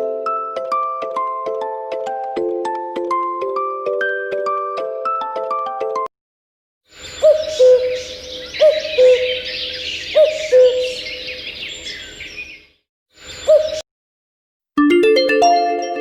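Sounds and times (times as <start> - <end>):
birds chirping: 6.9 - 13.8
marimba-like ringtone: 14.8 - 16.0.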